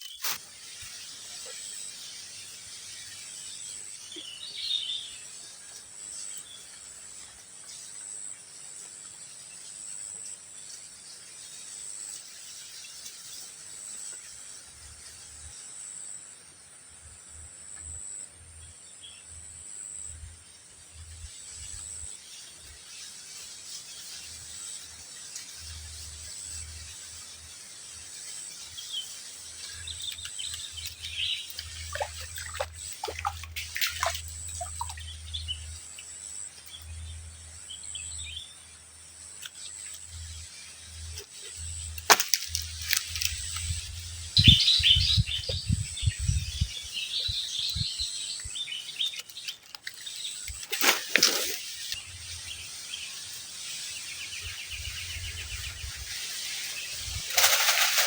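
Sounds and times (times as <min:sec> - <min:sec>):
high insect trill: 0:00.0 - 0:58.0
birds chirping: 0:24.0 - 0:38.9, 0:39.5 - 0:58.0
low wind rumble on microphone: 0:43.2 - 0:48.6, 0:54.4 - 0:56.2, 0:56.8 - 0:57.3.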